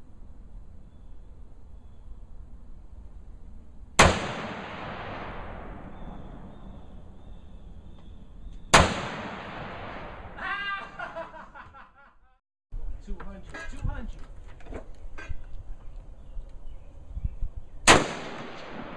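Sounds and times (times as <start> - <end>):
gunshots with echoing tail: 4.0 - 7.7, 8.6 - 10.4, 17.8 - 18.9.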